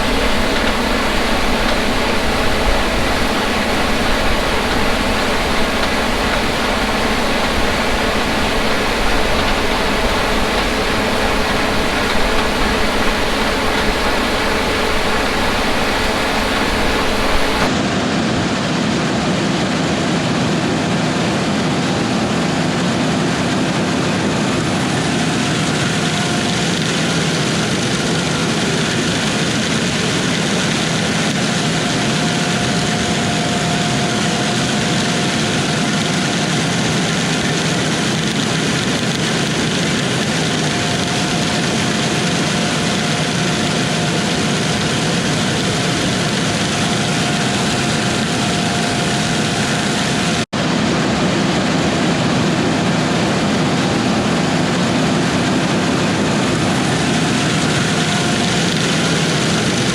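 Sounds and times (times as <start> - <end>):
diesel machinery running: 0.0 - 17.8, 24.3 - 59.9
faint steady whine: 0.0 - 17.8, 38.4 - 50.5.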